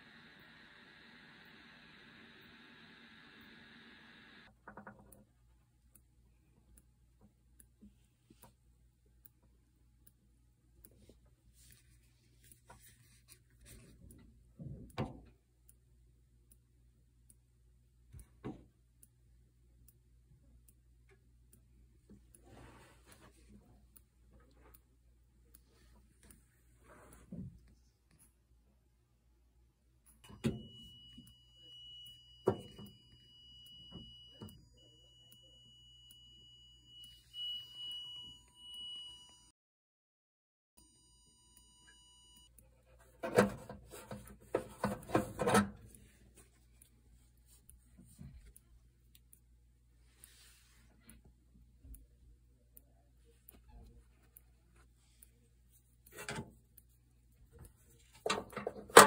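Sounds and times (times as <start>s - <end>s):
low steady hum: 0.0s - 39.4s
faint knocks and clicks: 4.4s - 5.6s.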